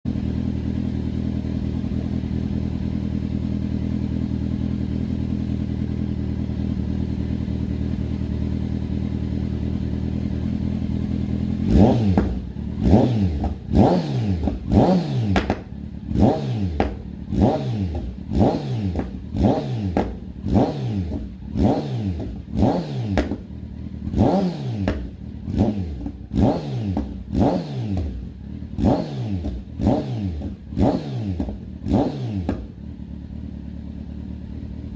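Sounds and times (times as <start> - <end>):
motorcycle engine idling and revving: 0.0 - 34.9
exhaust crackling and popping: 15.3 - 15.8.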